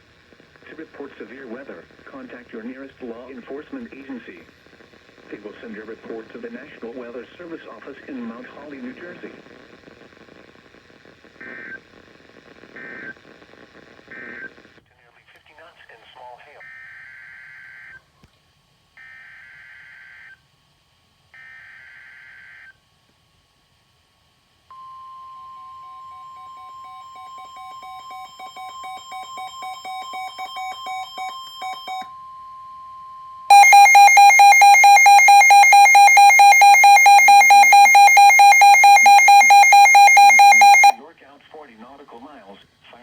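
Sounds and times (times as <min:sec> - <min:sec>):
raspy digital data bursts: 0:33.5 - 0:40.9
fast-pulsing radio alarm: 0:33.5 - 0:41.0
pulsing alert beep: 0:33.5 - 0:41.0
steady warning alert tone: 0:33.5 - 0:41.0.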